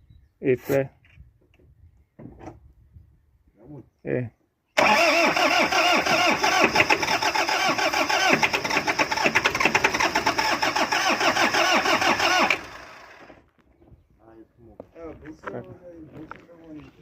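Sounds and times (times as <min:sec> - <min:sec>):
truck engine cranking: 0:04.8 - 0:13.4.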